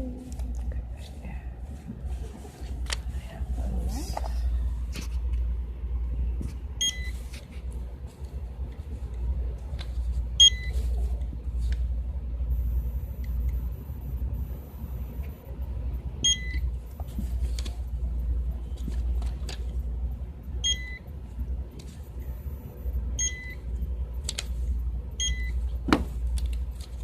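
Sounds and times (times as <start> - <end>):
steady low rumble: 0.0 - 27.0
barcode scanner beeping: 6.8 - 7.2, 10.4 - 10.8, 12.5 - 15.4, 16.2 - 16.8, 20.6 - 21.2, 22.1 - 23.8, 25.1 - 25.8.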